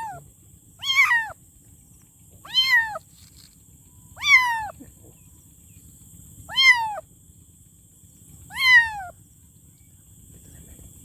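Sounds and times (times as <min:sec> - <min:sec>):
kitten meowing: 0:00.0 - 0:00.2, 0:00.8 - 0:01.4, 0:02.4 - 0:03.0, 0:04.2 - 0:04.8, 0:06.5 - 0:07.0, 0:08.5 - 0:09.1.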